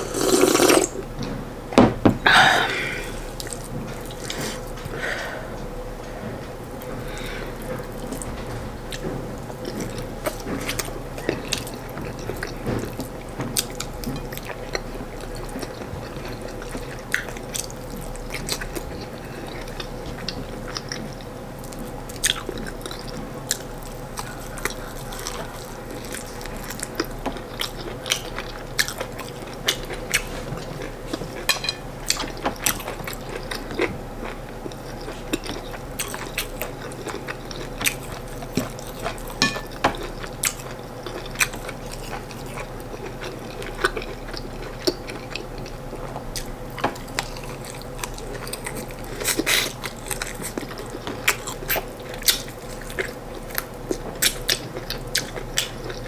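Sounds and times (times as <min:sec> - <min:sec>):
person chewing with mouth sounds: 0:00.0 - 0:01.0, 0:02.3 - 0:05.6, 0:06.8 - 0:56.0
faint steady hum: 0:00.0 - 0:56.0.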